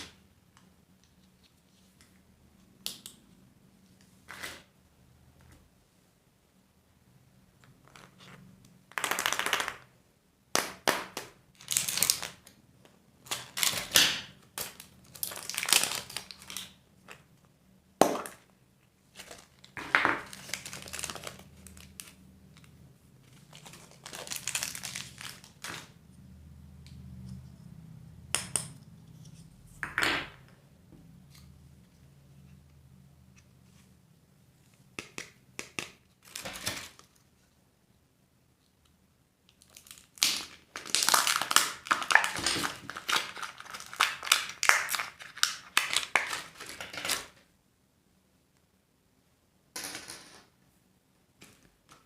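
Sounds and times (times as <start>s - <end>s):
wrappers crinkling: 19.1s - 22.2s, 23.3s - 25.9s, 39.6s - 47.4s.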